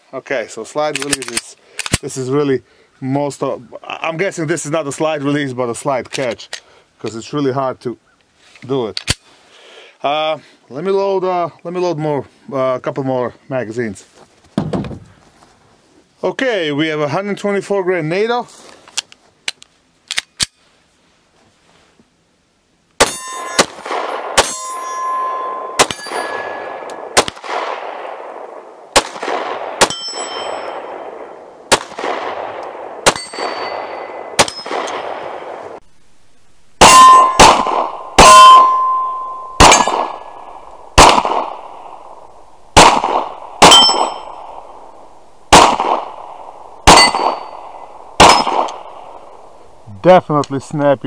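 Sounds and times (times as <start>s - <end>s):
steel target clanging: 23.0s - 26.9s, 29.8s - 30.9s, 33.1s - 35.1s, 36.8s - 41.6s, 43.6s - 44.7s, 46.9s - 49.4s
pistol shots: 23.0s - 35.7s, 36.8s - 49.8s.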